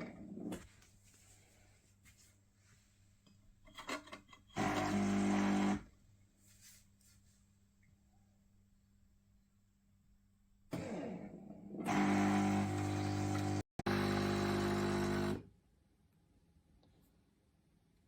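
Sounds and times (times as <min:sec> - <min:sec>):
coffee machine humming: 0:04.6 - 0:05.8, 0:11.7 - 0:15.4.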